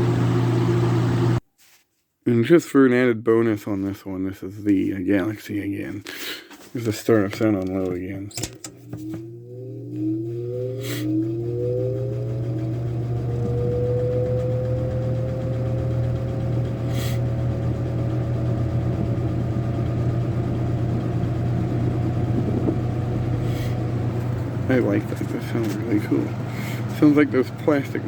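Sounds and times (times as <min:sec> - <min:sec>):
box fan blade whine: 0:00.0 - 0:01.4, 0:07.1 - 0:28.0
fan motor hum: 0:00.0 - 0:01.4, 0:07.1 - 0:28.0.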